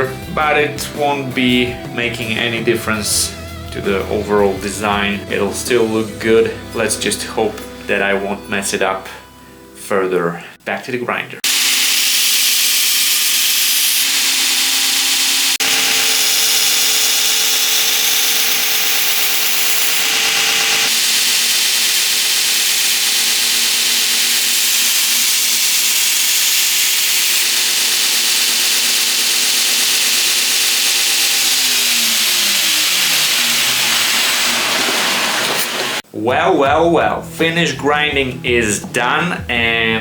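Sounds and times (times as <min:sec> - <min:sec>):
belt grinder hissing on steel: 0:11.4 - 0:36.0
grinder motor hum: 0:11.4 - 0:36.0.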